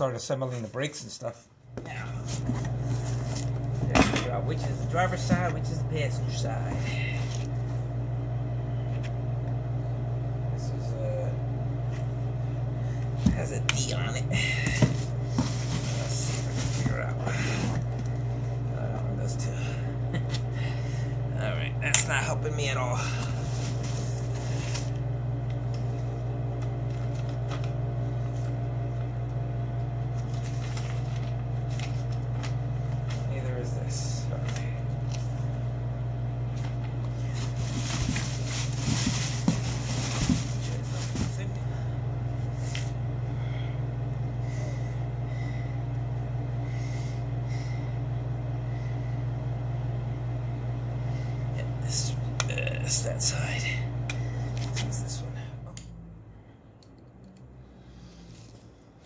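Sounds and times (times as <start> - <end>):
low hum: 1.5 - 59.0
faint rustles of parts handled: 36.6 - 41.5.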